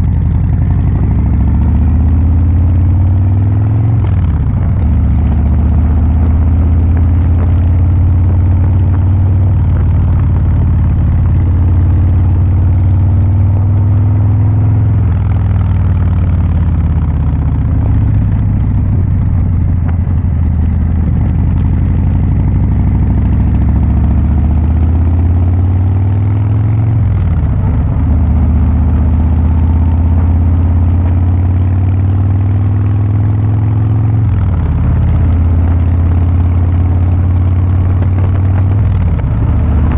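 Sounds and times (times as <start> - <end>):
motorcycle engine idling: 0.0 - 24.9.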